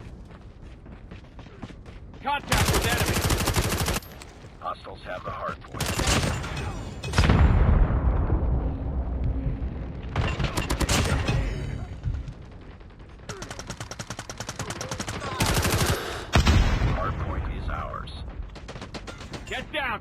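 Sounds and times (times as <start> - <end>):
video game gunfire: 2.3 - 4.2, 10.0 - 17.4
rapid automatic fire: 2.5 - 4.0, 12.4 - 16.6.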